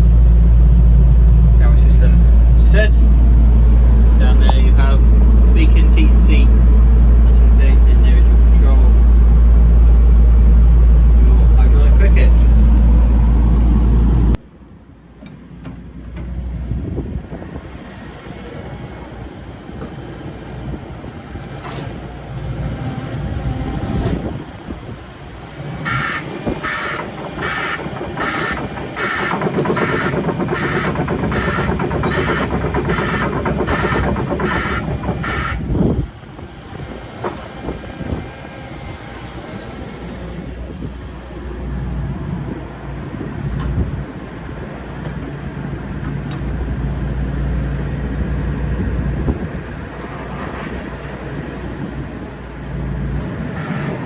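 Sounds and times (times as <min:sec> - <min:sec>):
excavator diesel rumble: 0:00.0 - 0:54.0
electronic warning beeper: 0:25.6 - 0:35.6
machinery squeaks: 0:25.6 - 0:35.9.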